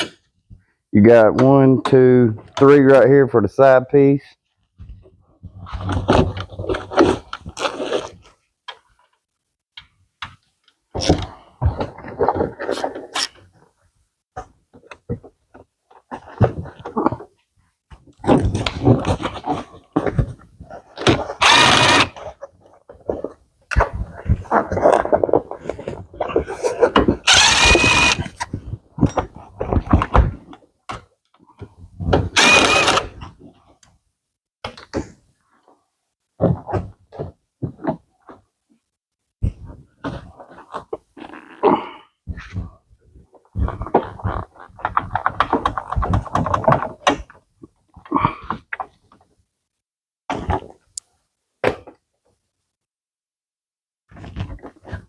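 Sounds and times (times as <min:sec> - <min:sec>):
cordless drill whining: 0:21.4 - 0:22.2, 0:27.3 - 0:28.3, 0:32.4 - 0:33.2.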